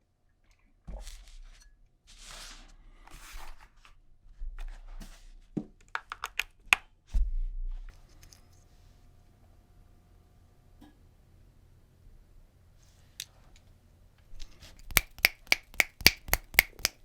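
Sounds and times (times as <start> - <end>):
sharp clicks: 14.8 - 17.0.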